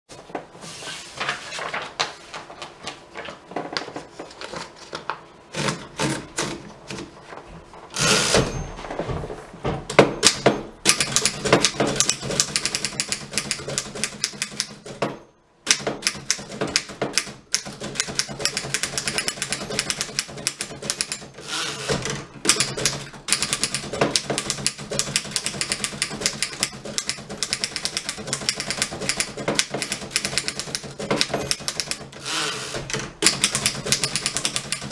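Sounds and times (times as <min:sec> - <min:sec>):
typewriter typebars clicking: 0:05.5 - 0:07.1, 0:10.2 - 0:15.1, 0:15.7 - 0:34.9.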